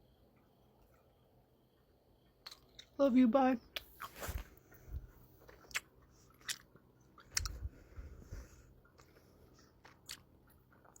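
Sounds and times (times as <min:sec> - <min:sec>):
person chewing a sweet: 0:02.2 - 0:03.0, 0:05.4 - 0:07.8, 0:08.6 - 0:11.0.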